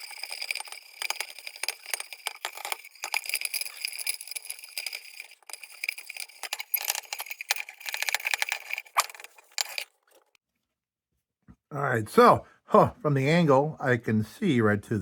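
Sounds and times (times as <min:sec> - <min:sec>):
scratching on thin tin: 0:00.0 - 0:10.3.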